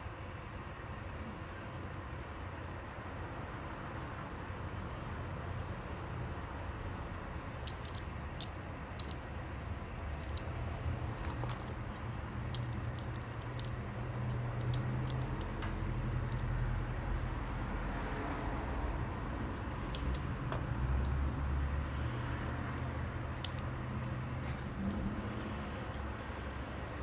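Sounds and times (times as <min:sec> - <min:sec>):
steady low rumble: 0:00.0 - 0:27.0
metallic clicks of lock parts: 0:07.3 - 0:09.3, 0:10.2 - 0:16.9, 0:19.5 - 0:21.2, 0:22.7 - 0:24.7.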